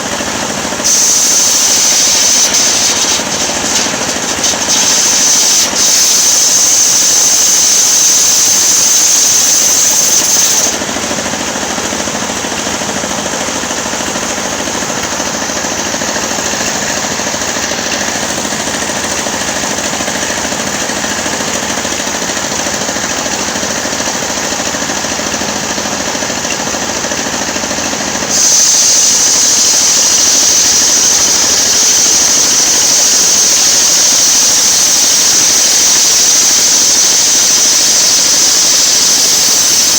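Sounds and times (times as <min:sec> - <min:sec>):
circular sawmill ripping a log: 0:00.0 - 0:39.9
high whine: 0:00.7 - 0:11.1.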